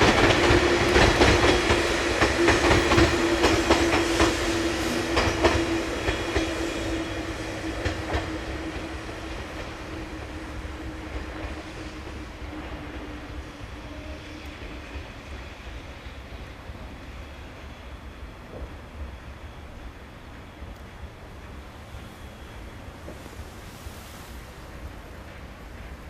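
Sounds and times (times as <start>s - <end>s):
train wheels clacking: 0.0s - 13.1s
train steady hum: 0.0s - 26.0s.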